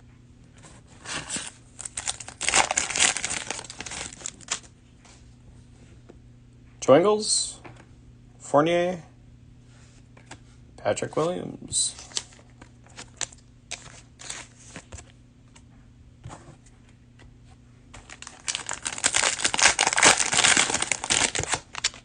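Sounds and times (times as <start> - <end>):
plastic wrapper crinkling: 1.2 - 4.7, 12.0 - 15.0, 18.0 - 22.0.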